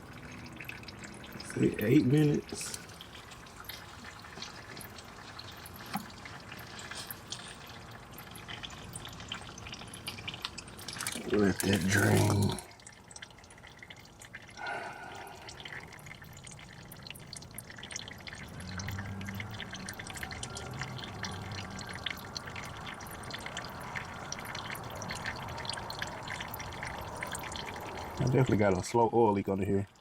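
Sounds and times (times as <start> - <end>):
oil trickling and dripping: 0.0 - 30.0.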